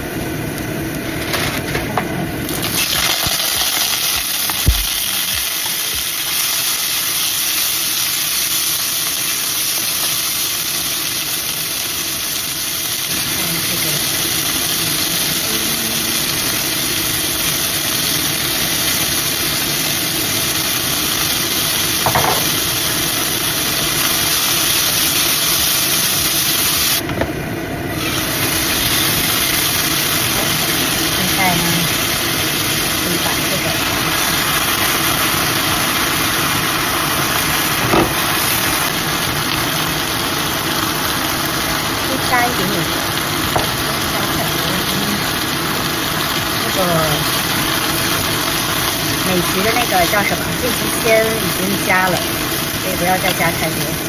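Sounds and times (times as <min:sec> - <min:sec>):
chicken frying in oil: 0:00.0 - 0:54.0.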